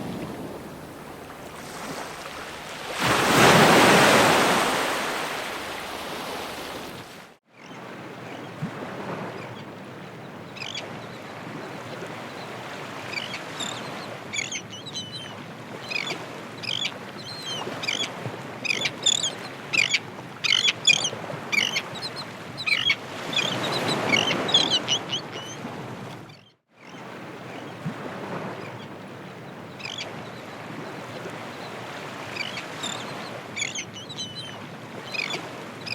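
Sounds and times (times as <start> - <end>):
ocean surf washing in: 0.0 - 7.4.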